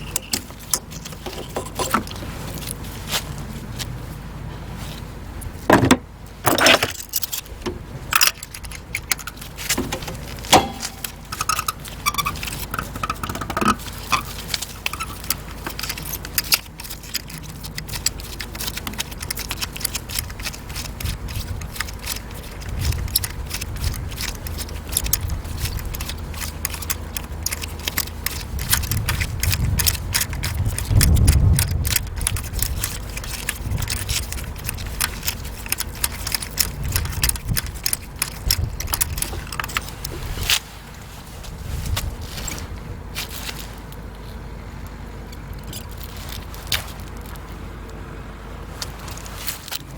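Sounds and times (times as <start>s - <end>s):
metal hand tools clinking: 0.0s - 2.2s, 6.5s - 40.1s
rapid light clicks: 6.9s - 40.6s
short metallic rings: 9.2s - 16.6s.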